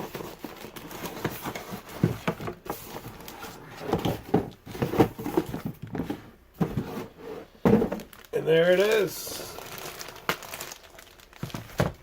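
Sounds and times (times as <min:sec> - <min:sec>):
cardboard box rustling and scraping: 0:00.0 - 0:08.1.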